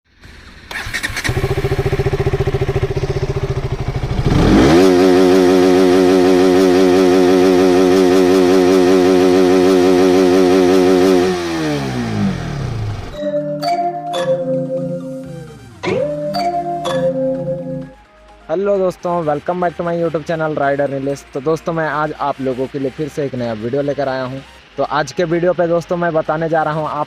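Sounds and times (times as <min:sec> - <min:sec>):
motorcycle engine revving: 0:00.1 - 0:13.2.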